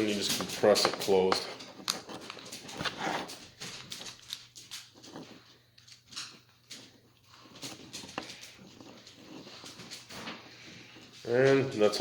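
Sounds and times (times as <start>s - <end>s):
plastic plug clicks and scrapes: 0.4s - 3.4s.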